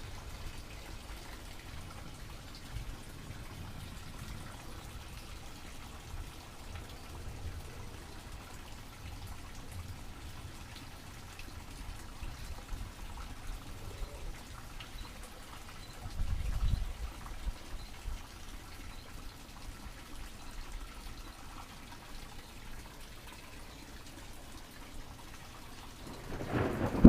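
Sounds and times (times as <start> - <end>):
steady rain falling: 0.0 - 27.0
low thunder rumble: 26.0 - 27.0.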